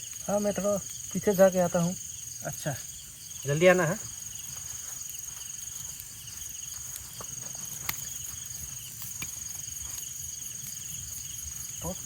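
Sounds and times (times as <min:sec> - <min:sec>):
crickets trilling: 0:00.0 - 0:12.0.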